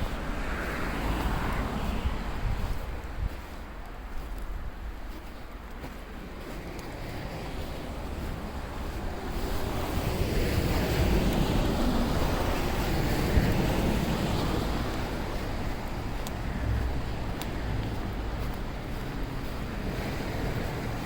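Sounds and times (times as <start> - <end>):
vehicle tyres rushing on snow: 0.0 - 21.0
wind rumbling on microphone: 0.0 - 21.0.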